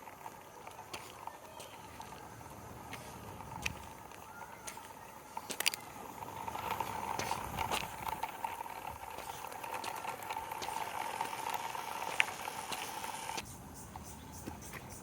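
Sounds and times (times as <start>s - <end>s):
small electric motor whining: 0.0s - 13.4s.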